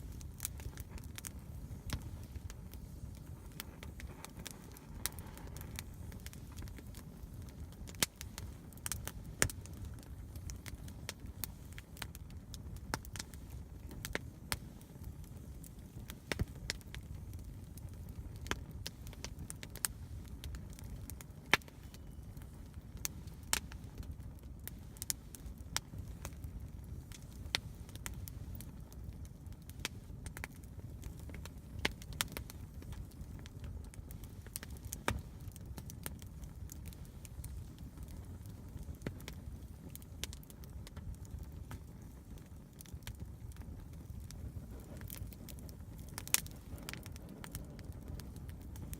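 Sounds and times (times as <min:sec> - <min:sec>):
campfire crackling and popping: 0:00.0 - 0:48.9
low noise of burning fire: 0:00.0 - 0:48.9.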